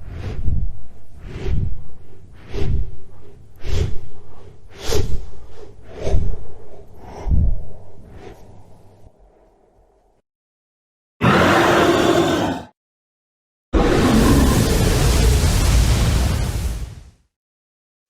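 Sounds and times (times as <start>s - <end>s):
dragon creature snorts: 11.2s - 12.8s, 13.8s - 15.0s.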